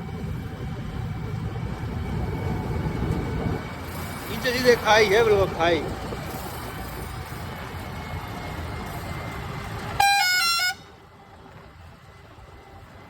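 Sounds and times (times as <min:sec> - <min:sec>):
combine harvester rumbling: 0:00.0 - 0:13.0
vehicle horn toot: 0:09.9 - 0:10.9.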